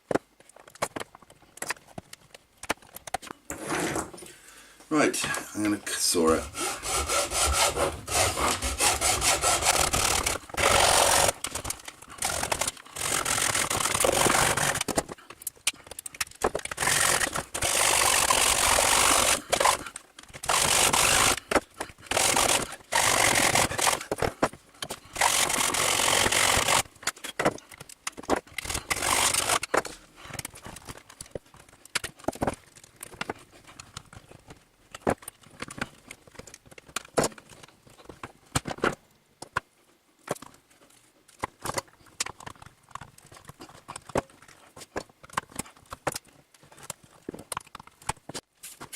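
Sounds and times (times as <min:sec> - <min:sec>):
hand saw cutting plastic housing: 0:06.5 - 0:15.2, 0:16.5 - 0:24.4, 0:25.1 - 0:26.9, 0:28.3 - 0:29.9.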